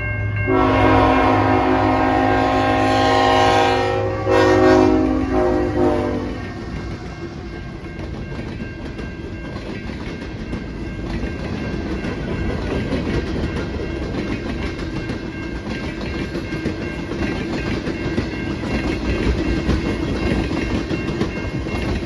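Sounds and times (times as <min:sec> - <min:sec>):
train wheels clattering over rails: 0:05.8 - 0:22.0.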